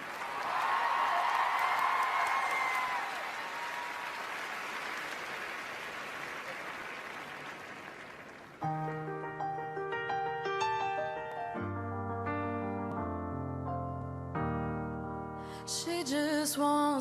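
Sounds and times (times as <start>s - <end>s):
audience applause: 0.0s - 8.7s
piano playing notes: 8.6s - 16.3s.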